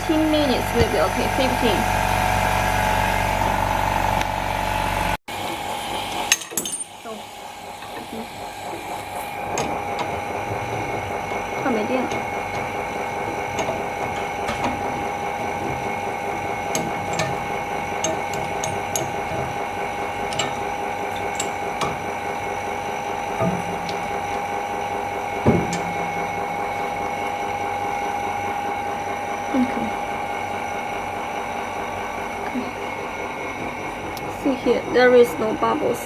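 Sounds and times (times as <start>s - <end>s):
machine humming and whining: 0.0s - 36.0s
dull knocks: 25.3s - 26.6s.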